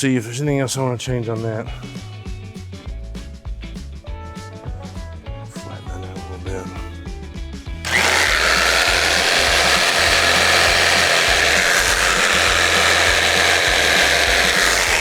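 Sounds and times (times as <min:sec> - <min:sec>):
power tool whirring on foam: 0:07.8 - 0:15.0.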